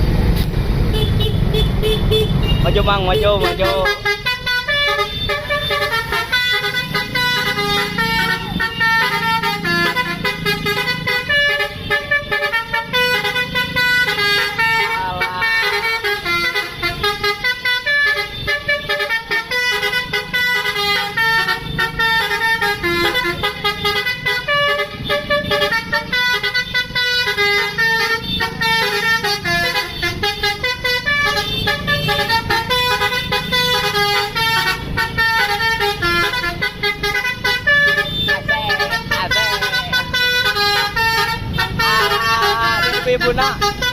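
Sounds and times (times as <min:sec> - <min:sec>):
multi-tone air horn melody: 0:00.9 - 0:43.9.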